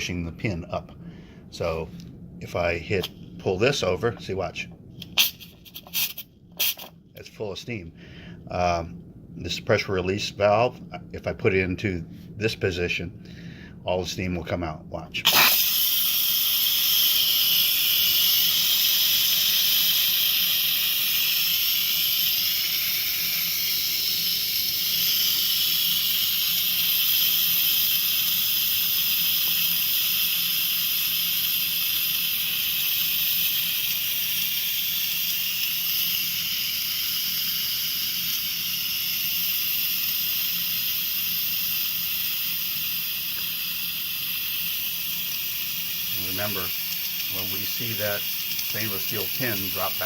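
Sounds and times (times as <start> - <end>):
pressure cooker venting steam: 5.0 - 6.9, 15.2 - 50.0.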